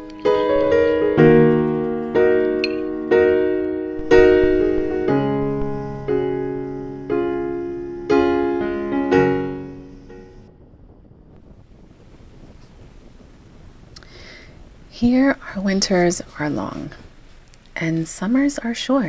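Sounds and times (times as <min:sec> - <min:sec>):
slow piano chords: 0:00.0 - 0:11.6.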